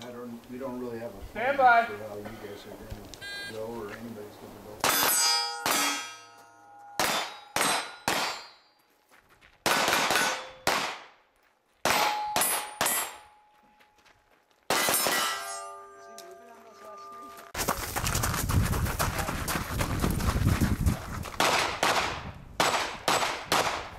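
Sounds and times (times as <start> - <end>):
steel target ringing: 4.8 - 8.8, 10.1 - 10.7, 11.9 - 13.5, 14.7 - 17.5
gunshots: 7.0 - 8.5, 9.6 - 11.2, 21.4 - 23.9.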